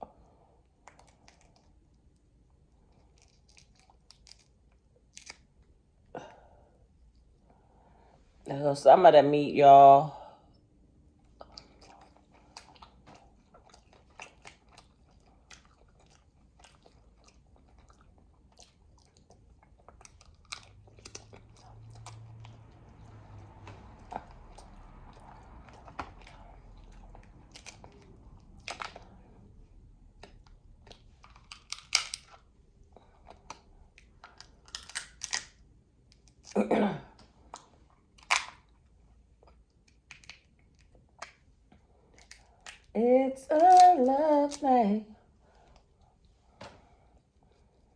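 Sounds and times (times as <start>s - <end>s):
chewing: 0.6s - 5.7s, 11.2s - 36.6s, 37.2s - 44.6s
crab shell cracking and crunching: 0.8s - 2.2s, 2.8s - 5.7s, 11.4s - 36.6s, 37.4s - 44.6s.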